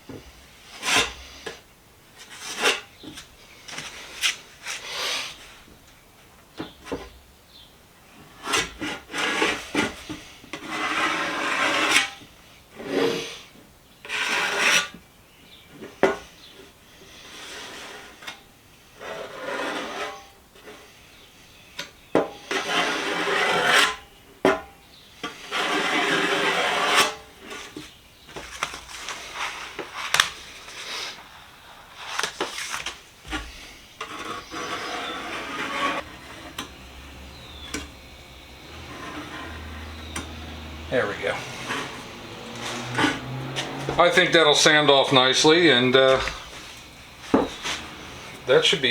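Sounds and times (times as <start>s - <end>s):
spreader scraping body filler: 25.3s - 27.7s, 28.5s - 48.9s.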